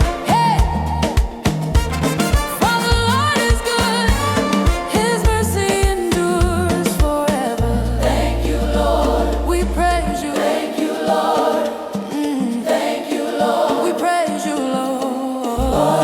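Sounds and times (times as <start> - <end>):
deep bass note: 7.6 - 10.3
choir singing: 7.8 - 14.5, 15.6 - 16.0.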